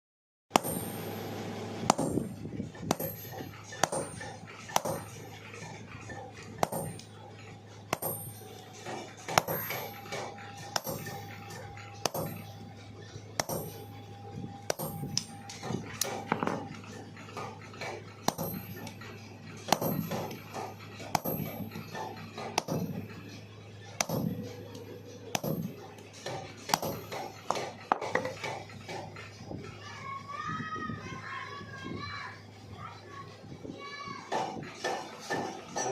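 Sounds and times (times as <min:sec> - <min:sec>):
metal-on-metal strikes ringing: 0:00.6 - 0:05.3, 0:07.9 - 0:08.6, 0:14.7 - 0:16.7, 0:19.7 - 0:23.1
ringing metal clangs: 0:00.6 - 0:12.7, 0:14.7 - 0:23.4, 0:34.9 - 0:35.9
low machine hum: 0:00.6 - 0:35.9.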